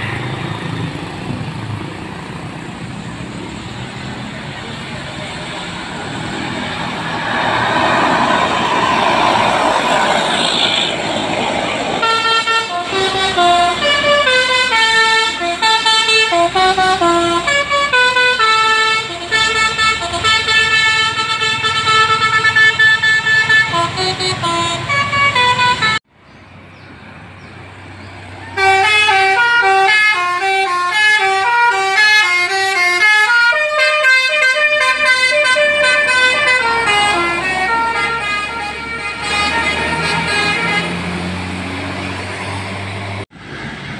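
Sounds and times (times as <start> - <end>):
loud rushing noise: 5.1 - 12.2
bus horn playing melodic tunes: 12.0 - 26.0, 28.5 - 41.4.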